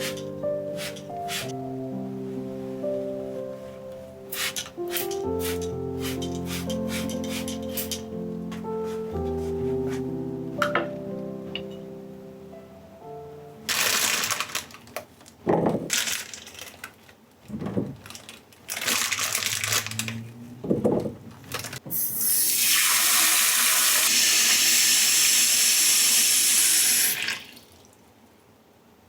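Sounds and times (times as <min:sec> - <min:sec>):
tap water running into sink: 0:21.9 - 0:27.8.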